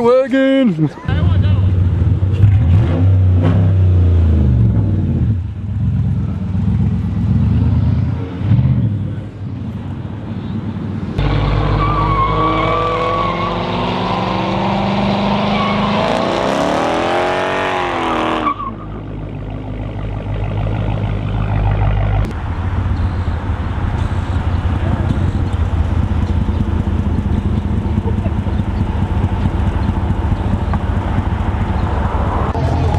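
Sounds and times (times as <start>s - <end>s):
car exhaust revving: 11.2s - 32.9s
low engine rumble: 18.6s - 32.9s.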